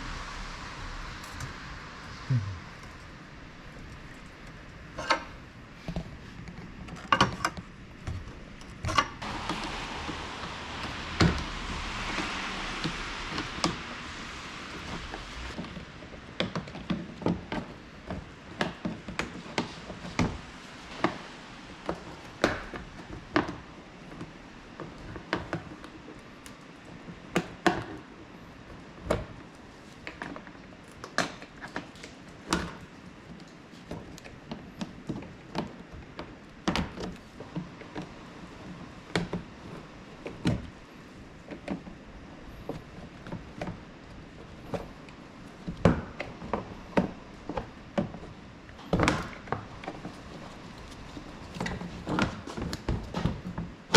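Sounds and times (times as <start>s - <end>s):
hiss: 0.0s - 4.4s, 9.2s - 16.3s, 19.2s - 25.8s.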